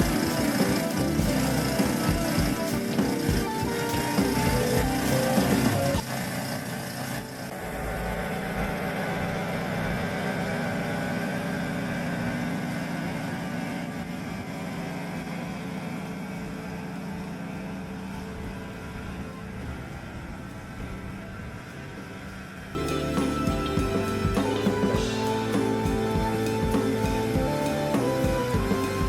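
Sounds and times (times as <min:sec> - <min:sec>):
snow blower engine running: 0:00.0 - 0:17.1.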